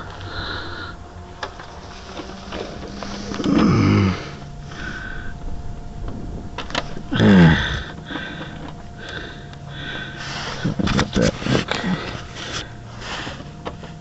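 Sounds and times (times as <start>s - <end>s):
man grunting with effort: 3.4s - 5.4s, 7.0s - 12.3s.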